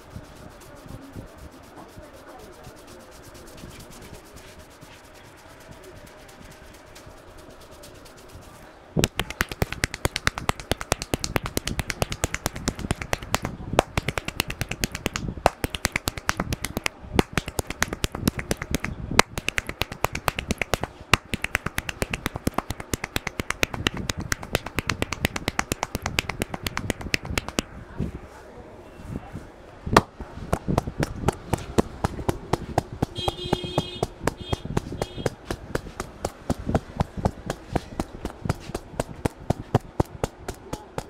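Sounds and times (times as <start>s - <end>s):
hands tapping on scalp: 9.0s - 27.7s, 30.0s - 41.0s.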